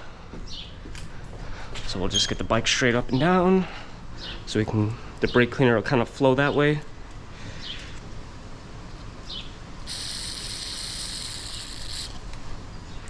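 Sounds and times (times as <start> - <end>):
aerosol can spraying hiss: 9.8 - 12.2.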